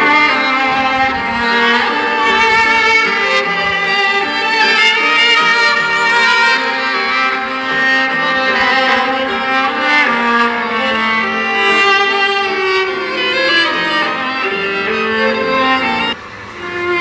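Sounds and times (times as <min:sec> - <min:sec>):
phone ringtone melody: 0:00.0 - 0:08.8.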